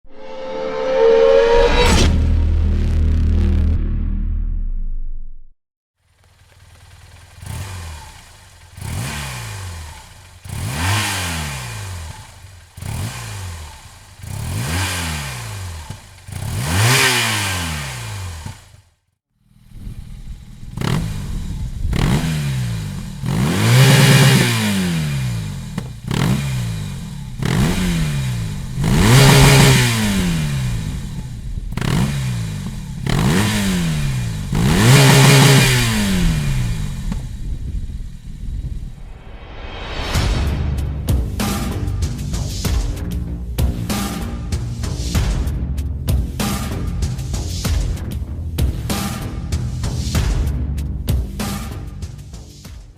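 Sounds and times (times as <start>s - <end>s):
motorcycle engine revving: 6.0s - 39.2s.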